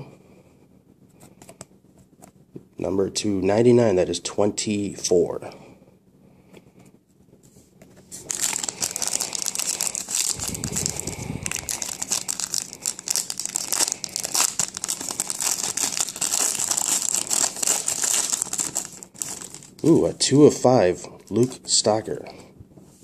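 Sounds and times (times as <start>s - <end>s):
wrapper crinkling and tearing: 8.2s - 20.0s.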